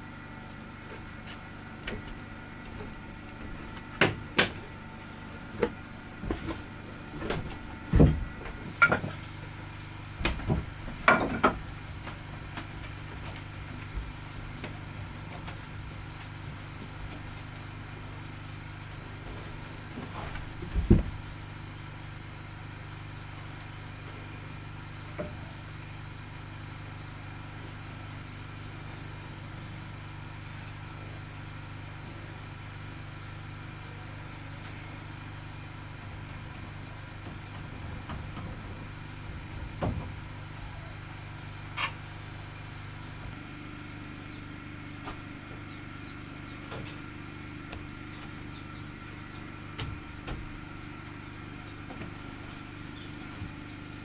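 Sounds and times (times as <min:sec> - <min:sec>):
steady low hum: 0:00.0 - 0:54.0
wood knocking on wood: 0:00.9 - 0:17.5, 0:19.3 - 0:21.4, 0:37.2 - 0:40.8.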